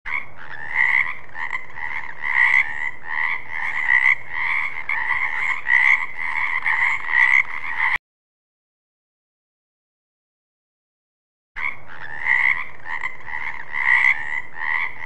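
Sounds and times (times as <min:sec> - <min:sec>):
frogs croaking in chorus: 0:00.1 - 0:08.0, 0:11.6 - 0:15.0.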